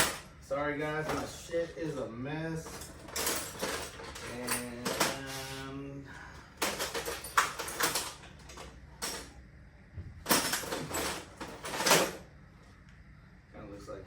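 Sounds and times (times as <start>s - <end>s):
hand tools clattering in toolbox: 0.0s - 0.2s, 2.6s - 5.6s, 6.6s - 9.2s, 10.3s - 12.2s.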